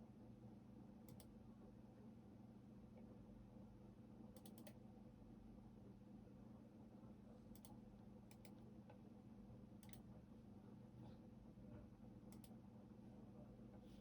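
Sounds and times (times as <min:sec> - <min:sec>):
low steady hum: 0:00.1 - 0:14.0
computer keyboard keystrokes: 0:01.1 - 0:01.3, 0:04.4 - 0:04.8.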